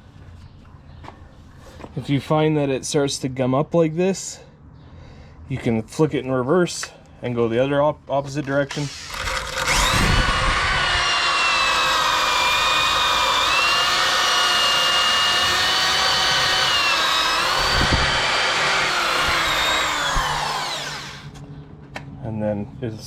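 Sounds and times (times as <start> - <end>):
electric drill motor whine: 8.8 - 21.4.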